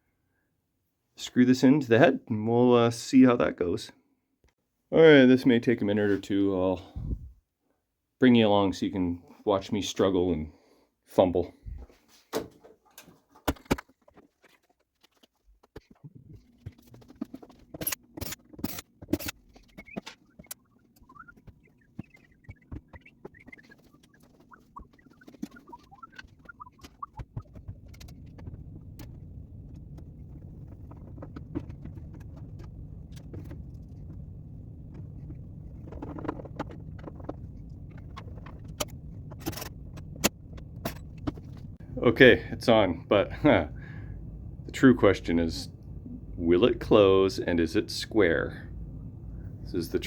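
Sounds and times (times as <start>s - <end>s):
steady low hum: 6.0s - 7.4s, 16.4s - 50.0s.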